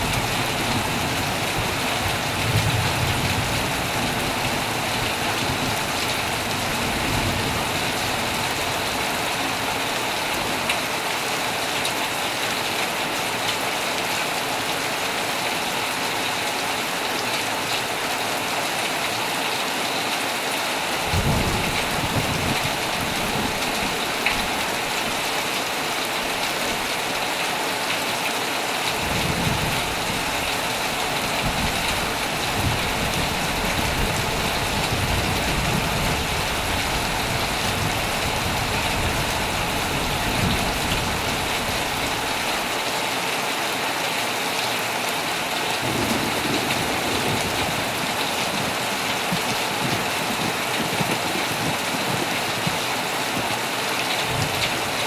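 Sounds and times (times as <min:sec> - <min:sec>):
heavy rain on a tent: 0:00.0 - 0:55.0
low thunder rolls: 0:21.0 - 0:25.2, 0:29.0 - 0:42.3, 0:45.8 - 0:52.8.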